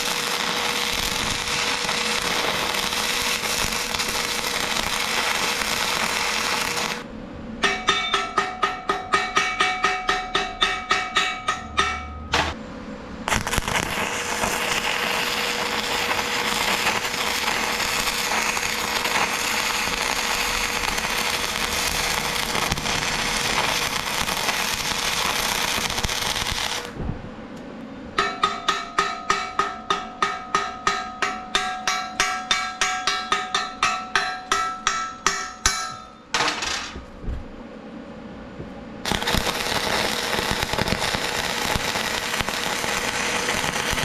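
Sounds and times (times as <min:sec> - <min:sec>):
welding arc crackling: 0:00.0 - 0:07.1, 0:13.3 - 0:27.0, 0:39.0 - 0:44.0.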